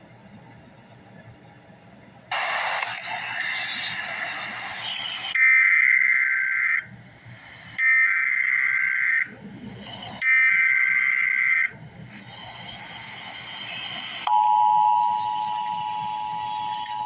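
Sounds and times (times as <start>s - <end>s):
modem-like data bursts: 2.3s - 17.0s
two-note attention signal: 14.3s - 17.0s.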